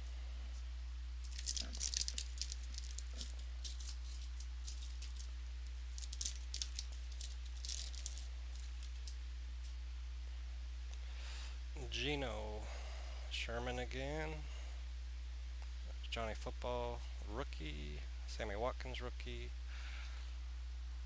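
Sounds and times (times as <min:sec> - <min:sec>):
trading cards shuffling: 0:00.0 - 0:05.3, 0:05.9 - 0:09.8
low electrical hum: 0:00.0 - 0:21.0.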